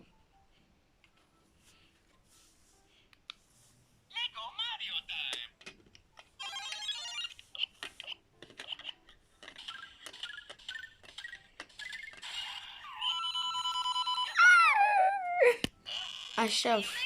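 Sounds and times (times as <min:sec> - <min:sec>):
toy electronic bleeps and chirps: 0:06.4 - 0:07.5, 0:09.6 - 0:14.7.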